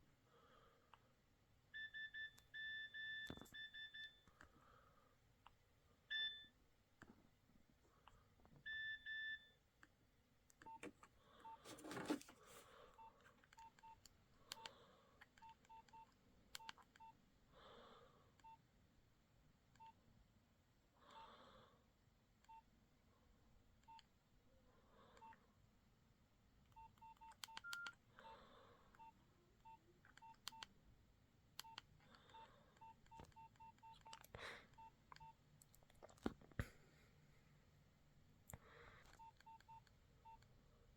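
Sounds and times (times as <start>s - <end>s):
phone keypad beeps: 1.7s - 4.3s, 6.1s - 6.6s, 8.6s - 9.6s, 26.8s - 28.0s, 29.0s - 30.7s, 31.6s - 35.4s, 39.2s - 40.4s.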